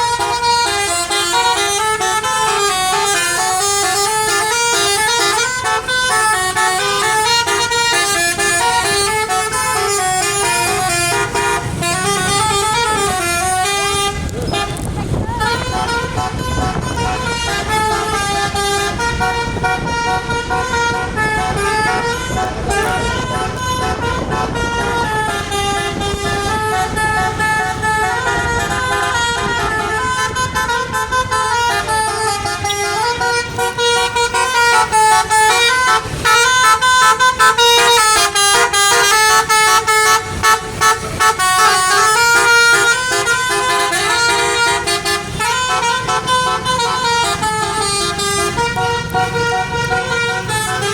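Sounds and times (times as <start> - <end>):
low vehicle rumble: 0.0 - 50.9
multi-tone bus horn tune: 0.0 - 50.9.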